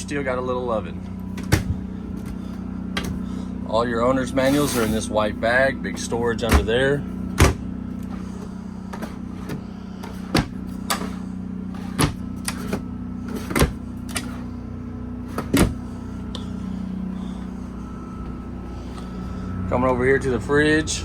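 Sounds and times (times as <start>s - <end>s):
air conditioner hum: 0.0s - 21.0s
cabinet doors and drawers clicking: 6.4s - 6.8s, 7.4s - 8.2s, 8.9s - 14.5s, 15.3s - 15.8s.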